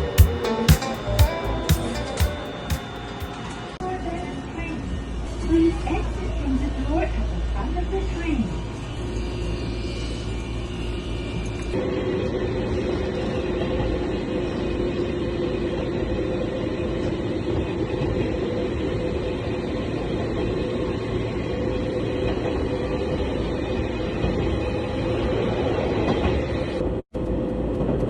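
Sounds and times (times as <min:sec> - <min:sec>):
electric train rumble and motor hum: 0:00.0 - 0:03.8.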